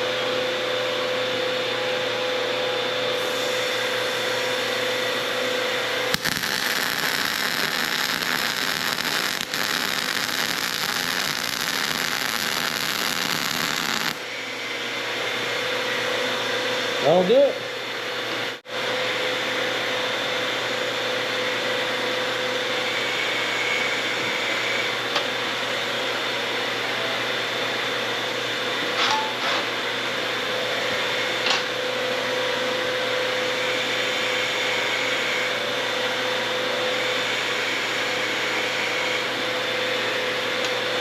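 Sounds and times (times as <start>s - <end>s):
machine whirring: 3.2s - 14.4s.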